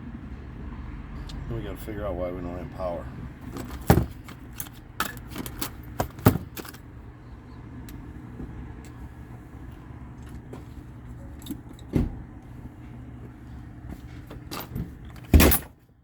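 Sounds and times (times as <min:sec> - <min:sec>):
metal tools clicking and clattering: 0:03.5 - 0:06.8.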